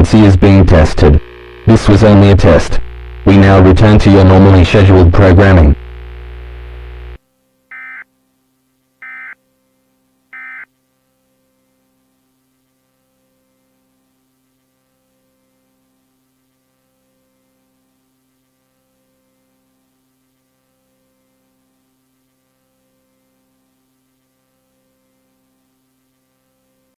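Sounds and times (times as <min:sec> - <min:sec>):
buzzy digital tones: 0:00.0 - 0:08.0, 0:09.0 - 0:09.4, 0:10.4 - 0:10.7
faint steady hum: 0:00.0 - 0:26.9.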